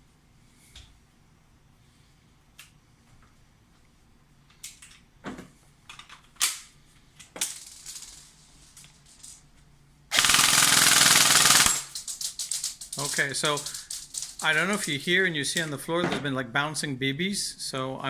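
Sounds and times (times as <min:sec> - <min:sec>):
airsoft gun clicks and clacks: 0:10.1 - 0:14.5.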